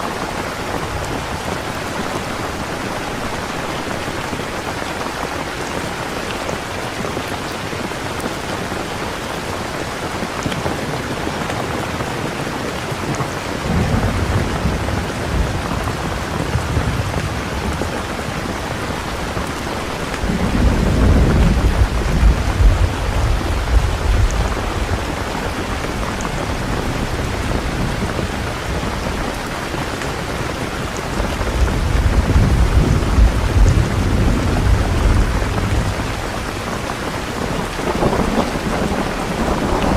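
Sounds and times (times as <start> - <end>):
steady rain hissing: 0.0 - 39.9
low thunder rumbling: 13.6 - 29.4, 31.0 - 39.9.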